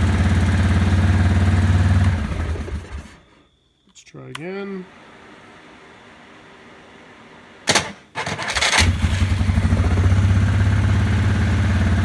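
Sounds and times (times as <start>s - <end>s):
starter motor clunk: 0.0s - 3.3s, 7.6s - 10.3s
engine turning over and idling: 0.0s - 3.4s, 7.7s - 12.0s.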